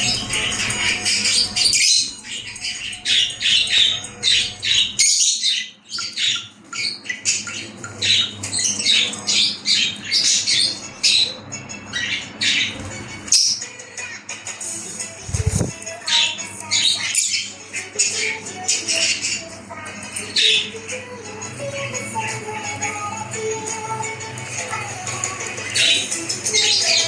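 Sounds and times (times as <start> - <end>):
parrots squawking and chirping: 0.0 - 13.6, 15.2 - 18.3, 25.6 - 27.0.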